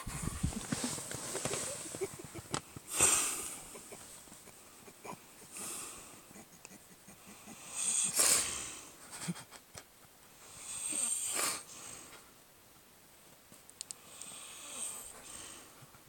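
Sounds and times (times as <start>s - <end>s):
man snoring: 7.5s - 8.8s, 10.6s - 11.7s, 14.0s - 15.4s
faint clicks: 13.7s - 14.3s.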